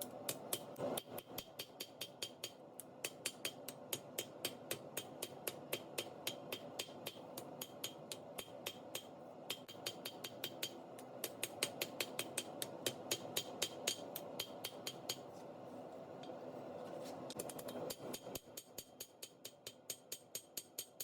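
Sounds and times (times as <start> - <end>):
hammer striking steel on anvil: 0.3 - 15.2.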